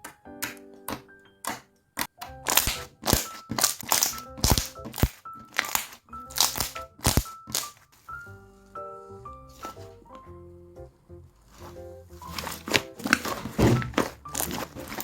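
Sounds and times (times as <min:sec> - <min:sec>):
soft background music: 0:00.0 - 0:15.0
slime crackles and pops: 0:00.4 - 0:07.8, 0:14.0 - 0:15.0.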